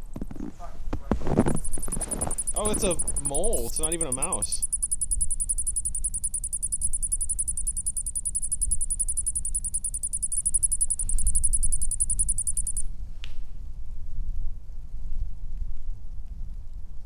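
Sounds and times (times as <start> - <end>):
mole squeaking: 1.5 - 12.8.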